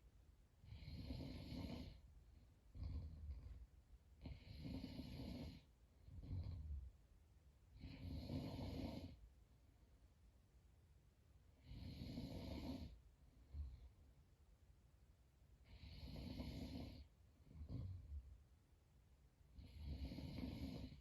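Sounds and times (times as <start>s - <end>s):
low snore: 0.6s - 2.0s, 2.7s - 3.6s, 4.2s - 6.9s, 7.8s - 9.2s, 11.6s - 13.8s, 15.6s - 18.2s, 19.6s - 21.0s.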